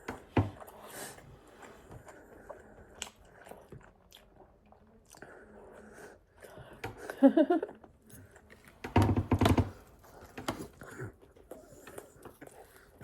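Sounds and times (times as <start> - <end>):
person chewing food: 0.0 - 6.8.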